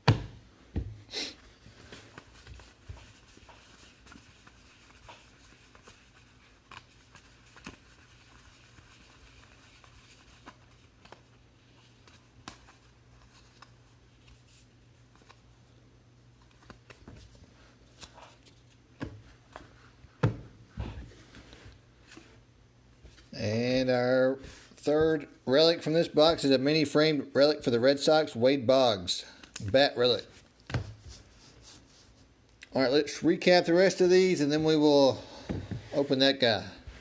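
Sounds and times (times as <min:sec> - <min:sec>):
cards rustling in hands: 0:01.6 - 0:20.0.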